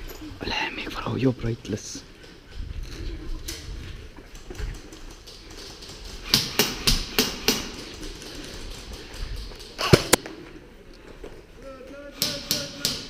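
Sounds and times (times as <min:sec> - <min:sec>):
airsoft gunshots: 0:09.8 - 0:10.2.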